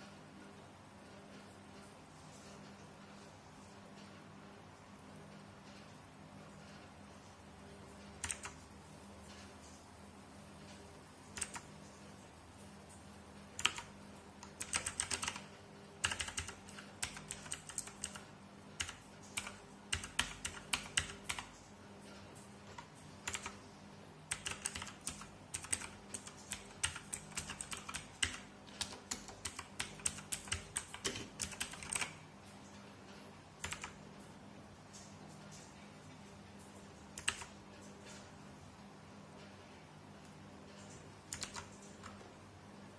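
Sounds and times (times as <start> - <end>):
clicky mechanical keyboard typing: 8.0 - 8.6, 10.6 - 11.8, 13.4 - 23.6, 24.3 - 32.8, 33.6 - 34.3, 36.6 - 38.3, 40.7 - 42.3.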